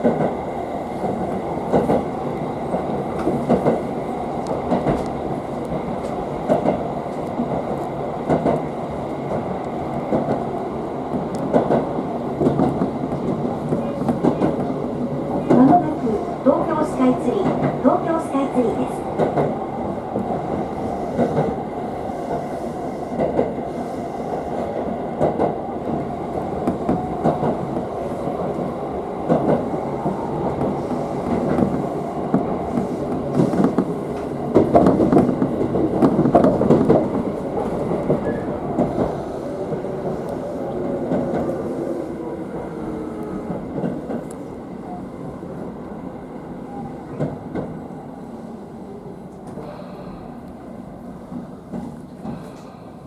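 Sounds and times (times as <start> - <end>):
train running noise: 0.0 - 53.0
train wheels clacking: 1.0 - 44.5, 51.3 - 53.0.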